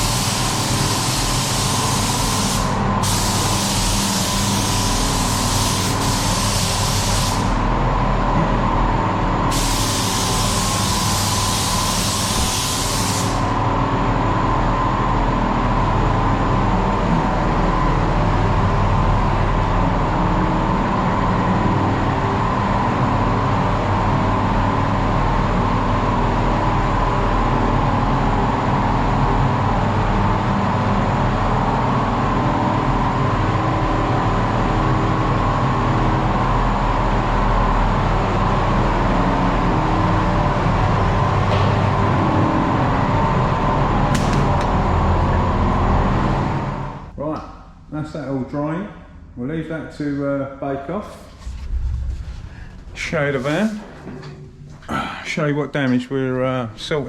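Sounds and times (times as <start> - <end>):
paint spray gun hissing: 0.0 - 7.6, 9.5 - 13.5
spray booth fans humming: 0.0 - 49.0, 50.0 - 57.0.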